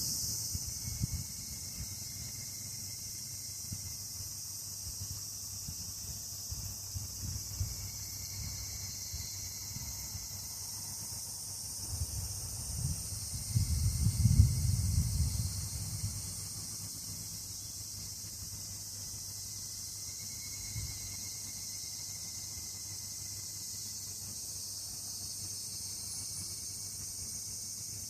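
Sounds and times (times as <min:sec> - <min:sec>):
wind rumble on microphone: 0:00.0 - 0:02.4, 0:03.6 - 0:10.2, 0:11.8 - 0:16.9
cicadas droning: 0:00.0 - 0:28.0.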